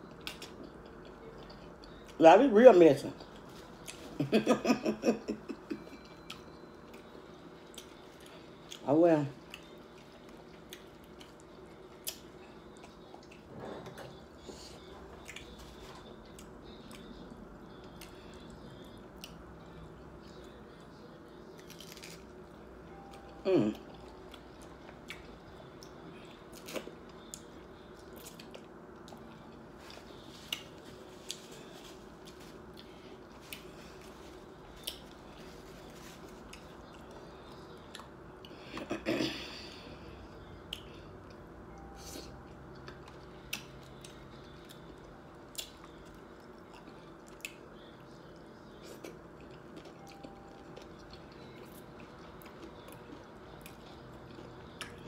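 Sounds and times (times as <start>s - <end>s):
chewing crunchy food: 9.4s - 13.5s, 14.2s - 22.5s, 23.1s - 38.6s, 42.6s - 55.0s.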